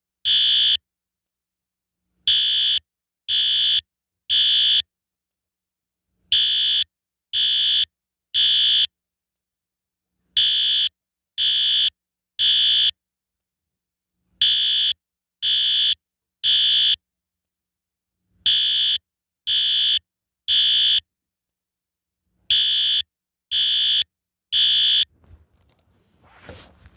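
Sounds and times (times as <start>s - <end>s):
fire alarm horn blasts: 0.3s - 0.8s, 2.3s - 4.8s, 6.4s - 8.9s, 10.4s - 13.0s, 14.4s - 17.0s, 18.5s - 21.0s, 22.5s - 25.1s.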